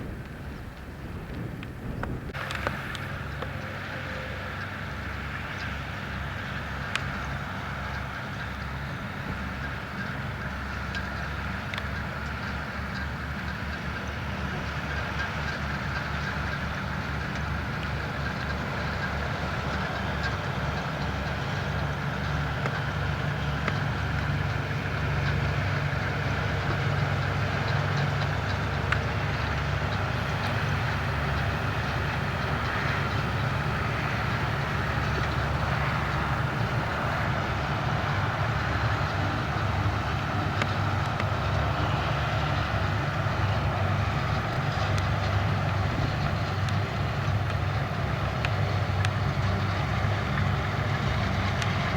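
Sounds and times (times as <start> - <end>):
tractor engine running: 10.5 - 51.9
harvester mechanical clatter: 18.2 - 51.9.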